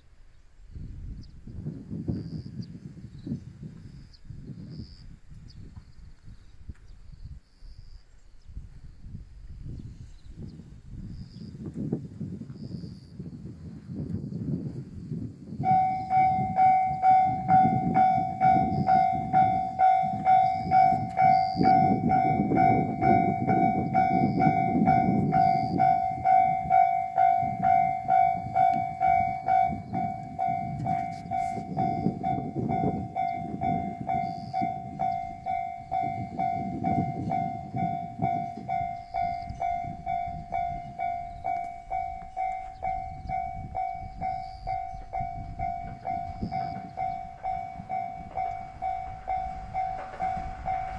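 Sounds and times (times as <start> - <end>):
train rumble and wheel noise: 0.0 - 50.9
level-crossing warning bell: 15.6 - 50.9.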